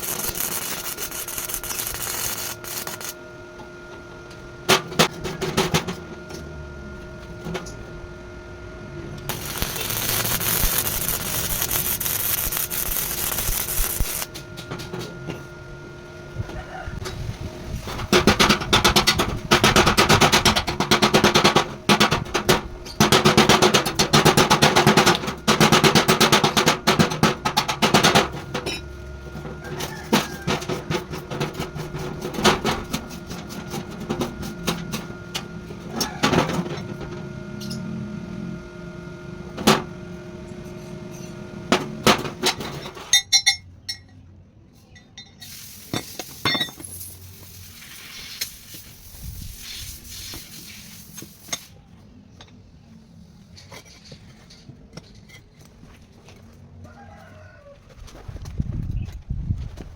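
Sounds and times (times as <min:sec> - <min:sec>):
steady tones: 0:06.0 - 0:16.4
hiss: 0:45.4 - 0:51.8.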